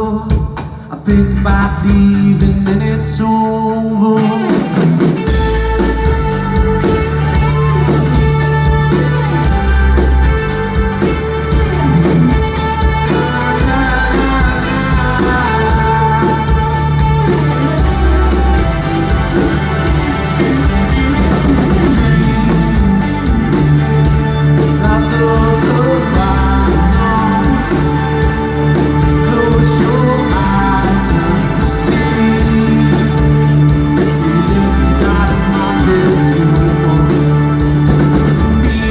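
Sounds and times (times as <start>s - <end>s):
drum kit beat: 0.0s - 3.2s, 4.2s - 38.9s
guitars: 0.0s - 38.9s
rock band playing live: 0.0s - 38.9s.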